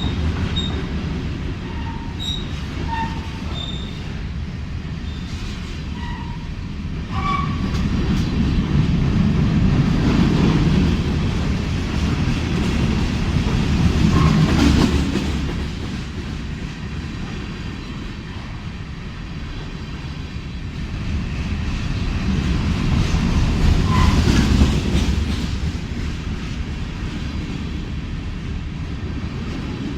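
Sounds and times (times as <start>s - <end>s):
freight train rumbling past: 0.0s - 29.9s.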